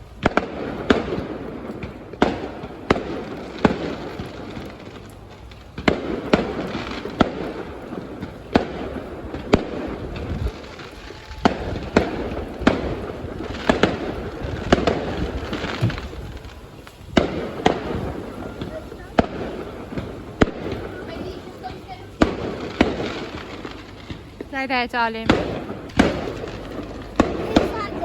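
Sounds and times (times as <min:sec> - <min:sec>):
firework shells bursting: 0:00.0 - 0:28.0
fireworks crackling: 0:00.0 - 0:28.0.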